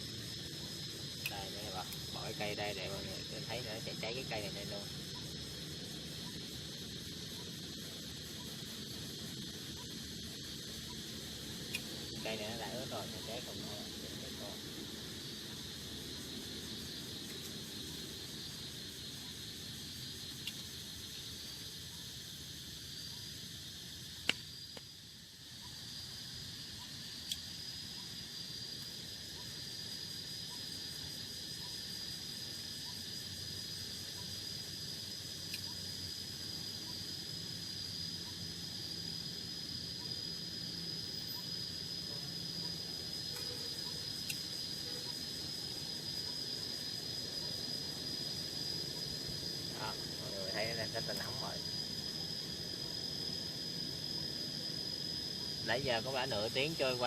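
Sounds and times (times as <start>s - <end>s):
insects trilling: 0.0s - 57.0s.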